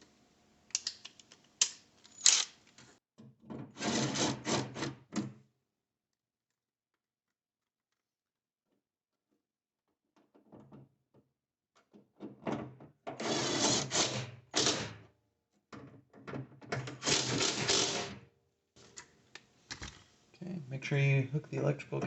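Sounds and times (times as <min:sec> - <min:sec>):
tools clicking and knocking: 0:00.7 - 0:03.6.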